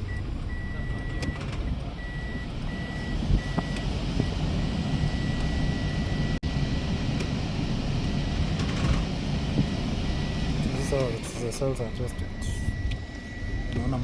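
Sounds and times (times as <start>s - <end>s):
high electronic beep: 0.0s - 1.4s, 2.0s - 4.4s, 5.0s - 6.6s, 10.1s - 14.0s
steady low rumble: 0.0s - 14.0s.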